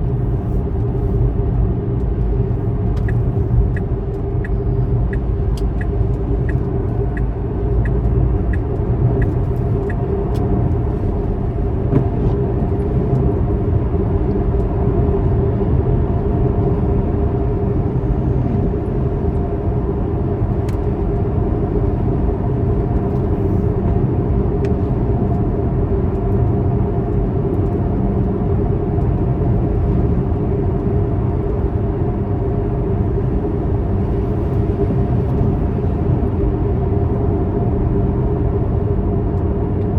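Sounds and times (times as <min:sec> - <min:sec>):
car engine and road rumble: 0:00.0 - 0:39.9
turn signal ticking: 0:02.9 - 0:12.8.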